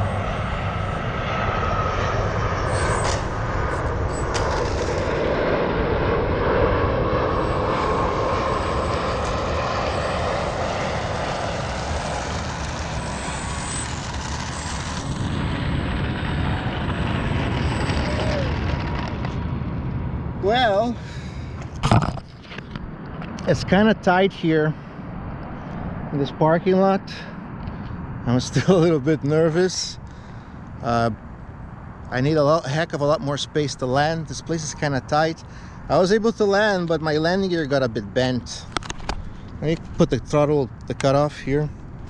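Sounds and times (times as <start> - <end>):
model airplane propeller drone: 0.0 - 23.4.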